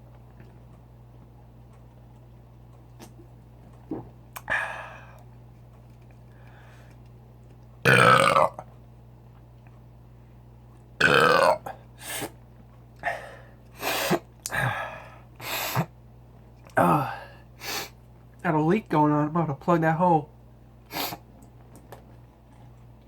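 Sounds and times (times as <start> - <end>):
man burping: 7.8 - 8.6, 11.0 - 11.8, 16.8 - 17.3.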